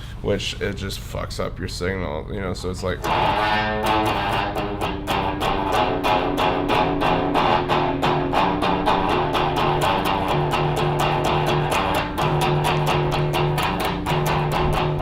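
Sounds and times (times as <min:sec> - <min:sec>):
low sustained guitar note: 0:03.0 - 0:15.0
ring modulated electric guitar notes: 0:03.0 - 0:15.0.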